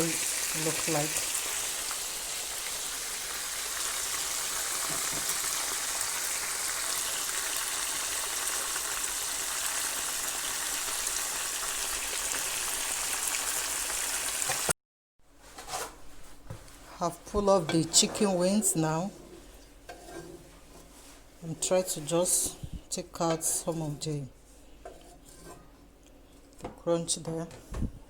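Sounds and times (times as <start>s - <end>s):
food sizzling in hot oil: 0.0s - 14.7s.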